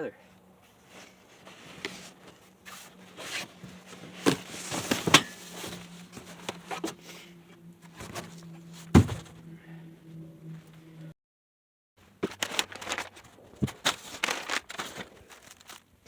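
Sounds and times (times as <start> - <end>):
cardboard rustling and scraping: 0.6 - 9.4, 12.2 - 15.9.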